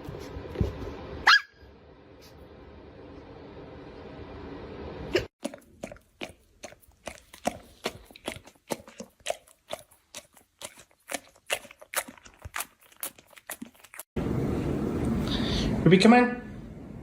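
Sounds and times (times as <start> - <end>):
animal crunching food: 5.4 - 14.1.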